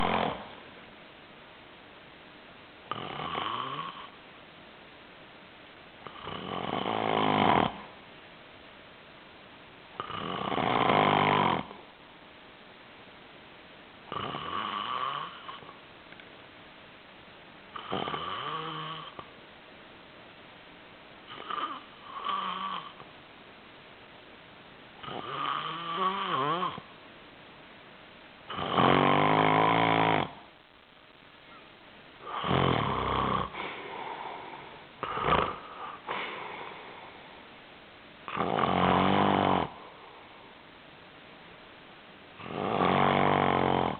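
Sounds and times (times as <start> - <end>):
person snoring loudly: 0.0 - 0.6, 2.9 - 4.2, 6.1 - 7.9, 10.0 - 11.8, 14.1 - 15.7, 17.8 - 19.2, 25.0 - 26.9, 28.5 - 30.5, 32.2 - 36.8, 38.3 - 40.0, 42.4 - 43.9.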